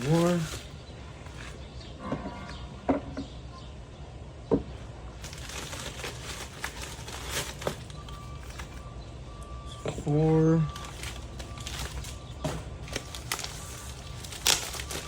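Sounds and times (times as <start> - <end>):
plastic wrapping crinkling: 0.0 - 1.6, 5.1 - 8.9, 10.7 - 15.0.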